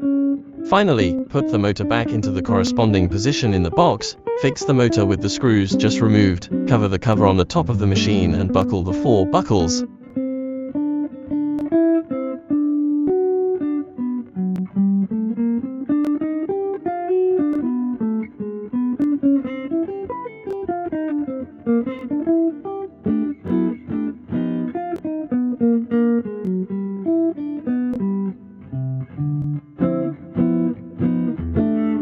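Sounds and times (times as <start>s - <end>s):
plucked guitar melody: 0.0s - 32.0s.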